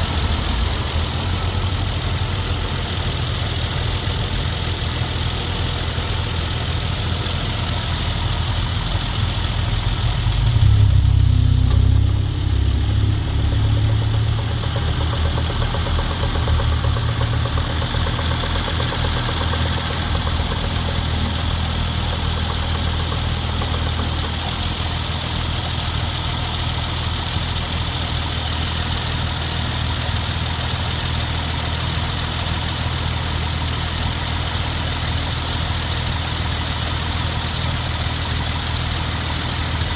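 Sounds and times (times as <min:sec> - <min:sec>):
car engine idling: 0:00.0 - 0:39.9
rapid knocking: 0:12.8 - 0:24.8.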